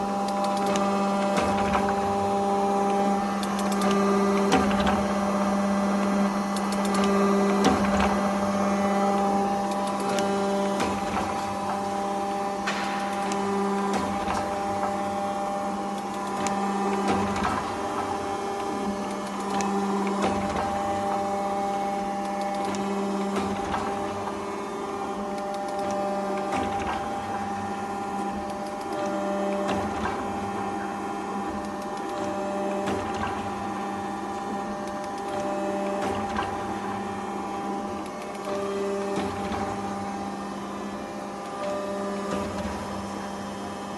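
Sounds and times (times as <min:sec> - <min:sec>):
hydraulic pump hum: 0:00.0 - 0:43.9.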